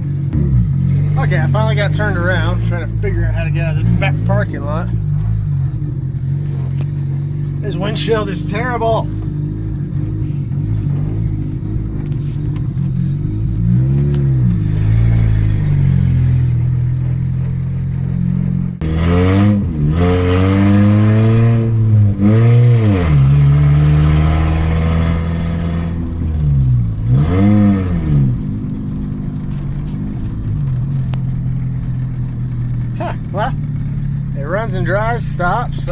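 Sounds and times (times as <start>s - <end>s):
car engine revving: 0.0s - 35.9s.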